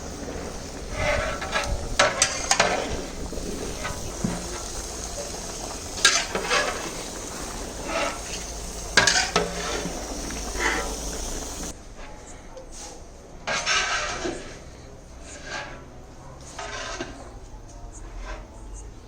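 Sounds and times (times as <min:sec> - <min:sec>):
vegetables sizzling in a pan: 0:00.0 - 0:11.8
spatula scraping a pan: 0:00.0 - 0:12.2, 0:12.8 - 0:17.4, 0:18.0 - 0:18.5.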